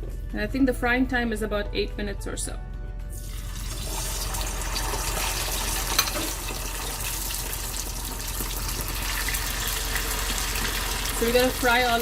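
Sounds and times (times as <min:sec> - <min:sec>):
chicken sizzling in hot oil: 0:03.2 - 0:12.0.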